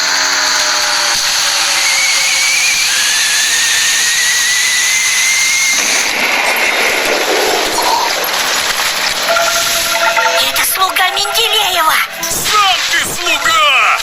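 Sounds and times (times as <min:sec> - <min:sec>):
loud hiss with whistling tones: 0:00.0 - 0:08.7.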